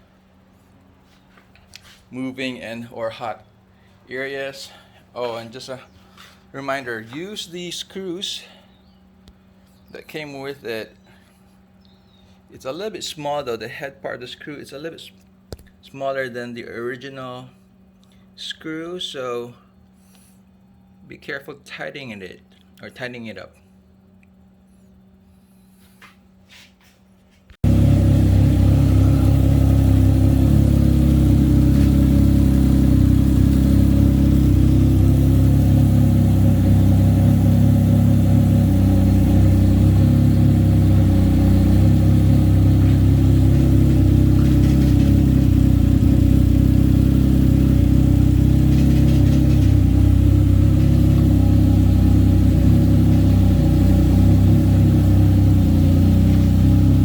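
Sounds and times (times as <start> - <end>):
engine idling: 27.6 - 57.0.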